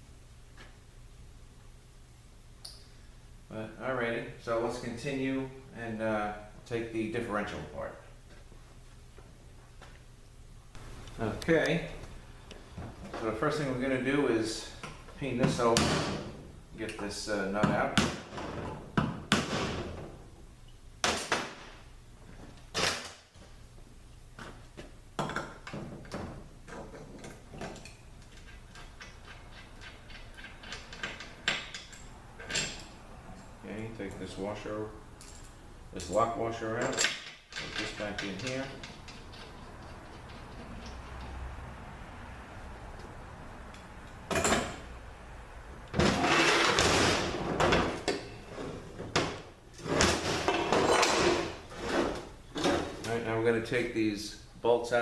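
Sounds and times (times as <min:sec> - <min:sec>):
metal tools scraping and clinking: 0:26.7 - 0:33.6, 0:35.2 - 0:41.4.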